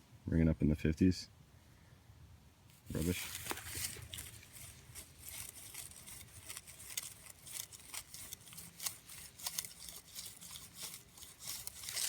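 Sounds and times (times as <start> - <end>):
hand tool scraping soil: 2.8 - 12.0.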